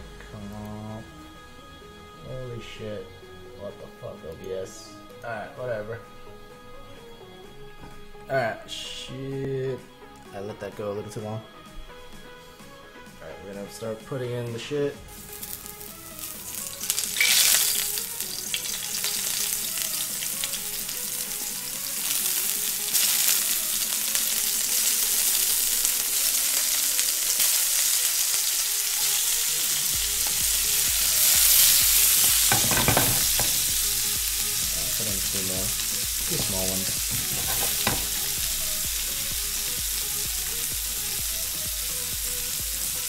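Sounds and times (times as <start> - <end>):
food sizzling in hot oil: 15.0 - 43.0.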